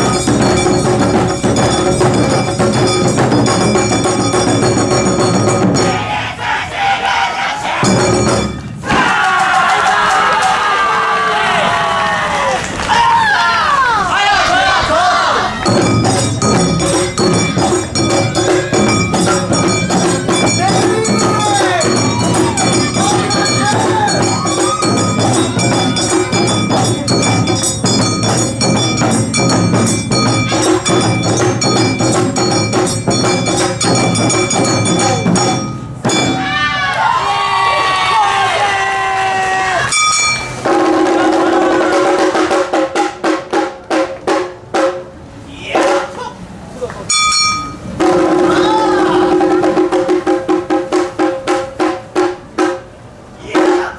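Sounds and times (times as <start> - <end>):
ringing metal tones: 0.0 - 6.2, 7.8 - 8.9, 15.5 - 36.8, 39.9 - 41.1, 47.1 - 48.6
quick percussion beat: 0.0 - 6.3, 7.8 - 10.3, 15.5 - 36.9, 39.9 - 45.1, 47.1 - 53.9
drum strikes: 0.0 - 6.4, 7.7 - 10.3, 14.6 - 37.0, 39.9 - 46.2, 47.1 - 53.9
festival dance music: 14.1 - 36.8.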